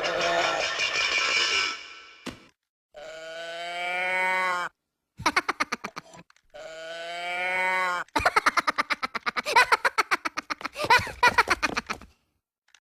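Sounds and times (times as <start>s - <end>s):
chopped voice-like pulsing: 0.0s - 2.0s
moo-like animal call: 3.0s - 4.7s, 6.6s - 8.1s.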